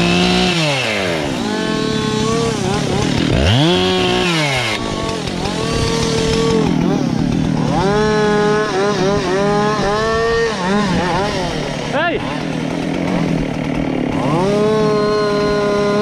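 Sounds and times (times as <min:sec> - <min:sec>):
chainsaw cutting wood: 0:00.0 - 0:16.0.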